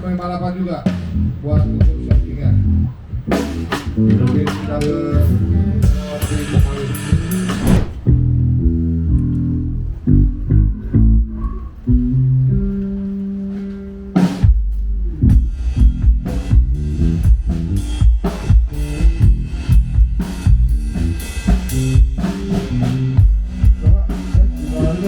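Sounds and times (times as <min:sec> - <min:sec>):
rock drum beat: 0:00.9 - 0:02.6, 0:03.2 - 0:08.2, 0:14.2 - 0:25.0
bass guitar note: 0:00.9 - 0:25.0.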